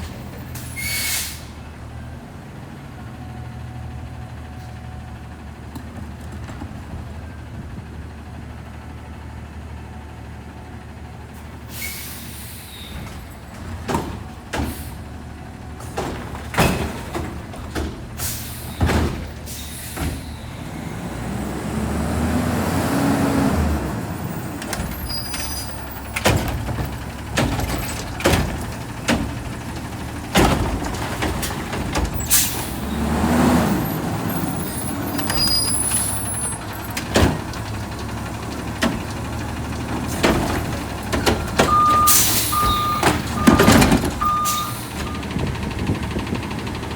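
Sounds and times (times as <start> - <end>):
garbage truck engine: 0.0 - 46.9
air brake hissing: 0.6 - 1.6, 11.7 - 13.2, 14.6 - 15.1, 18.2 - 20.6, 32.2 - 33.0, 41.9 - 43.4
metal bangs and clanks: 15.7 - 20.5, 24.4 - 33.0, 33.8 - 46.6.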